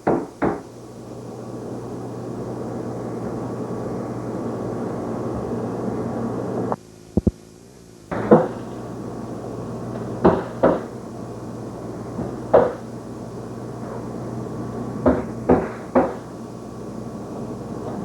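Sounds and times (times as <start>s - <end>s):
sharp knocks: 0.0s - 0.6s, 8.1s - 8.7s, 10.2s - 10.9s, 12.2s - 12.8s, 15.0s - 16.3s
steady low hum: 0.0s - 18.0s.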